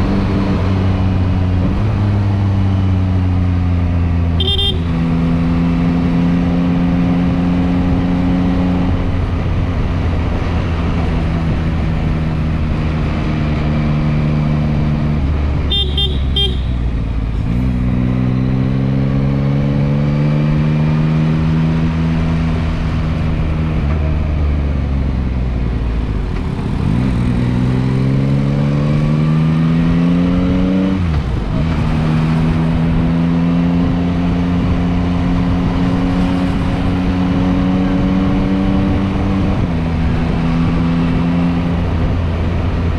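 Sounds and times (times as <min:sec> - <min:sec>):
motorcycle engine accelerating: 0:00.0 - 0:42.9
horn toots: 0:04.4 - 0:05.1, 0:15.7 - 0:17.1.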